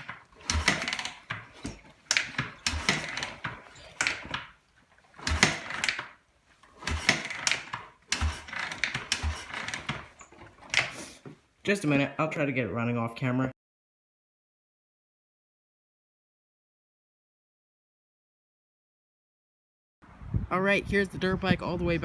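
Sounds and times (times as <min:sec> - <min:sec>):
dirt bike kick-start thump: 0:00.0 - 0:04.6, 0:05.2 - 0:11.4
engine clattering turning over: 0:00.0 - 0:11.4.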